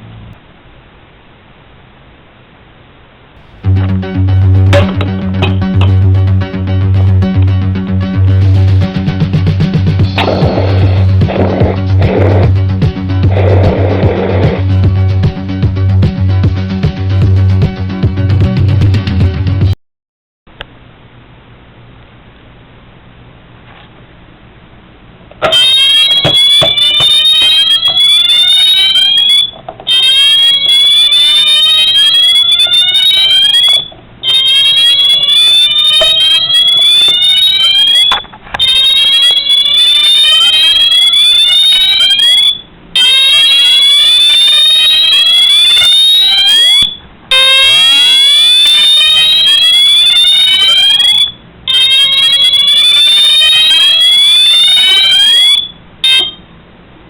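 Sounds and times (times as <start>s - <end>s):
fire alarm horn rising whoop: 25.5s - 56.4s.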